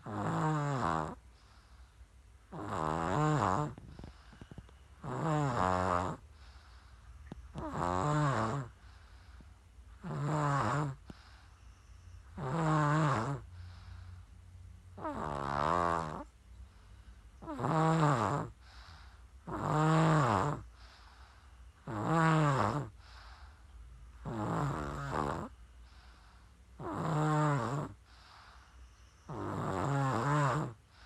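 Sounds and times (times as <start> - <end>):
child snoring: 0.0 - 1.2, 2.5 - 8.8, 10.0 - 11.4, 12.3 - 13.5, 15.0 - 16.3, 17.4 - 21.2, 21.8 - 23.3, 24.2 - 25.6, 26.8 - 28.6, 29.3 - 31.0
quiet breaths: 0.0 - 31.0.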